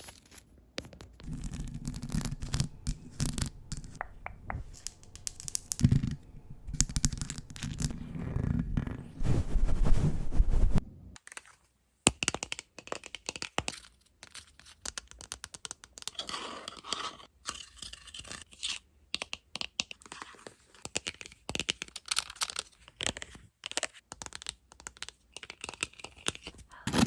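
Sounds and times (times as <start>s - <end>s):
tapping on objects: 0.9s - 7.9s
scratching and crinkling: 0.9s - 10.8s.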